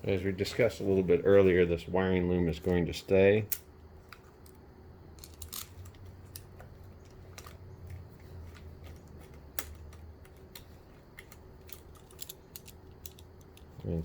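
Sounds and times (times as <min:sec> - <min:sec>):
low steady hum: 0:00.0 - 0:14.0
small parts clicking and tapping: 0:03.4 - 0:14.0.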